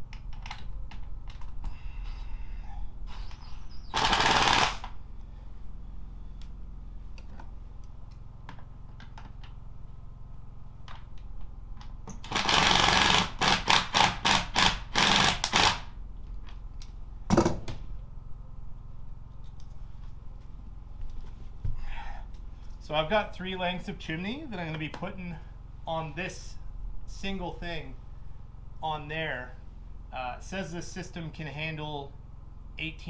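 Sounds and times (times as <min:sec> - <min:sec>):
power driver running: 0:03.0 - 0:26.8.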